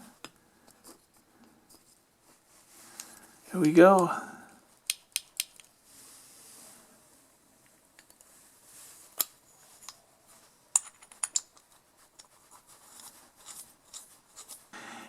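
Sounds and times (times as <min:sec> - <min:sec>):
small metal parts clicking: 0:04.8 - 0:05.7, 0:10.7 - 0:12.3.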